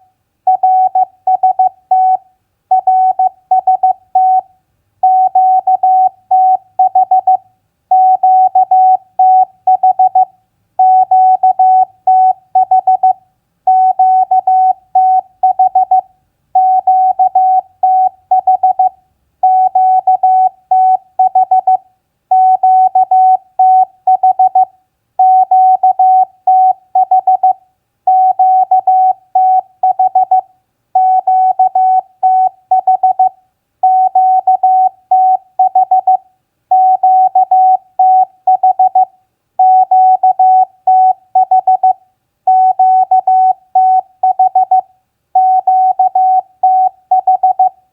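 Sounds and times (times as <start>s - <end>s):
morse code beeps: 36.8s - 44.8s, 45.4s - 47.7s.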